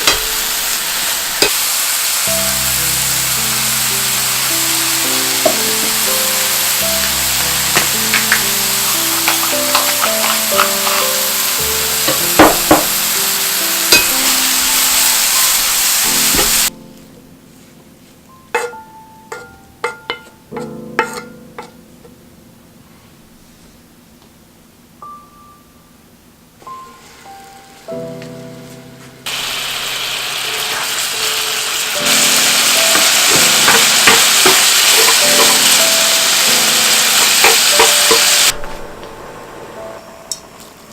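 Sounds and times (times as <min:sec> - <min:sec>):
food sizzling in a pan: 0:00.0 - 0:16.7, 0:26.7 - 0:28.0, 0:29.3 - 0:40.9
light plucked background music: 0:02.2 - 0:23.7, 0:25.0 - 0:40.9.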